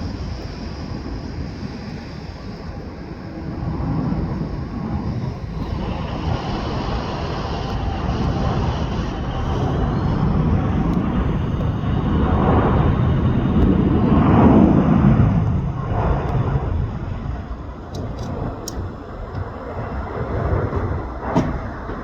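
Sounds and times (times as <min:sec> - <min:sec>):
high-pitched engine whine: 0:00.0 - 0:22.0
jet engines roaring: 0:00.0 - 0:22.0.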